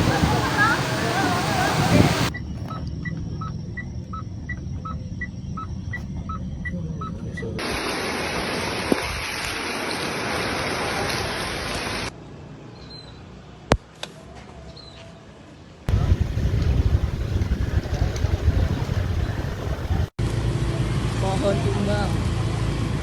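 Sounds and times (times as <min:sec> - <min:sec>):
windstorm rushing: 0:00.0 - 0:09.7, 0:15.9 - 0:20.1
electronic alarm beeping: 0:02.1 - 0:07.6.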